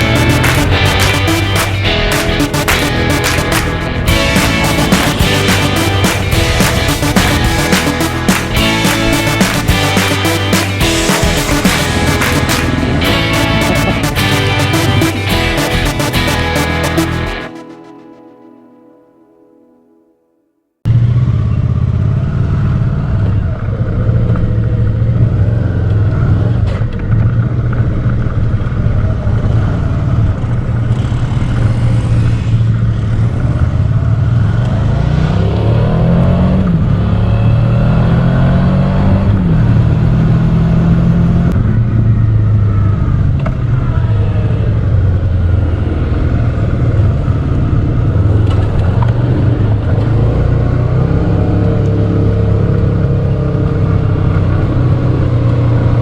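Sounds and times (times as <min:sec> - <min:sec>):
motorcycle engine revving: 0:20.9 - 0:42.7.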